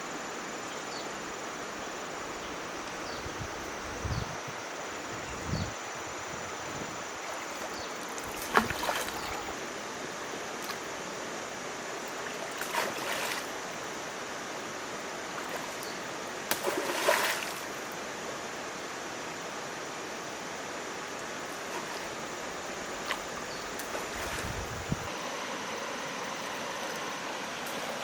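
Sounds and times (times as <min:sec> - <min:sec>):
flowing water rushing: 0:06.9 - 0:28.0
short loud splashes: 0:16.5 - 0:17.6.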